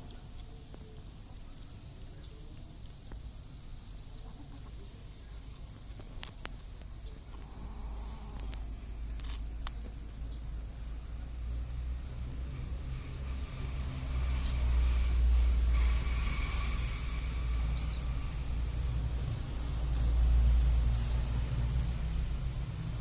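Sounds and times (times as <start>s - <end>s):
kitten crunching food: 0.0s - 14.2s
steady low rumble: 0.0s - 23.0s.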